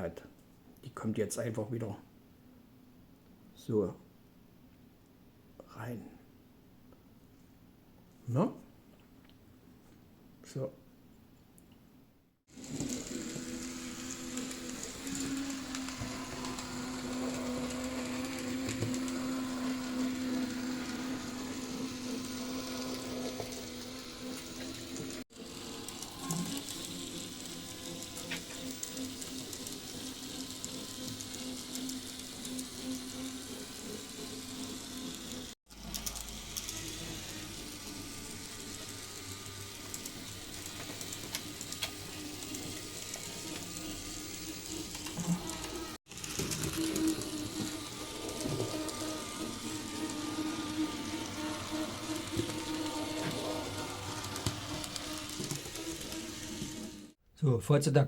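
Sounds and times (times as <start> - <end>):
model train motor whirring: 12.5 - 57.2.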